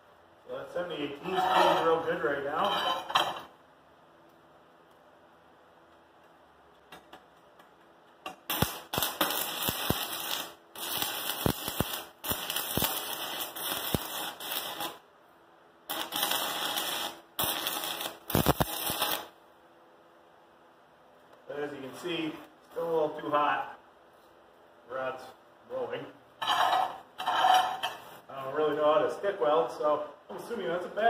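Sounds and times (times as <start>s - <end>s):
welding arc crackling and popping: 5.9s - 15.0s, 15.9s - 19.4s.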